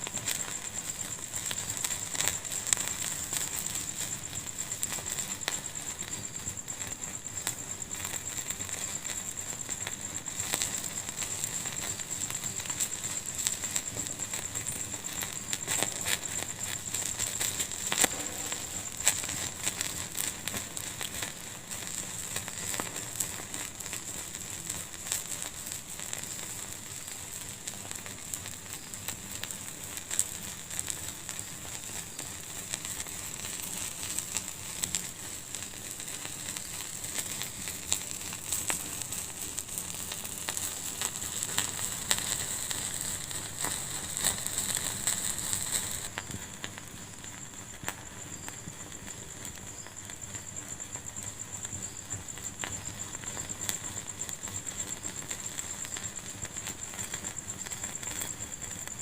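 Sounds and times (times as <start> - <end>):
fire crackling and popping: 0.0 - 59.0
steady high hiss: 0.0 - 59.0.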